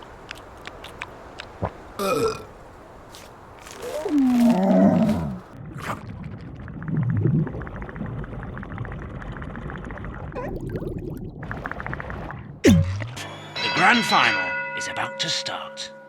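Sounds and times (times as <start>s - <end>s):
cartoon burps: 2.0s - 2.5s.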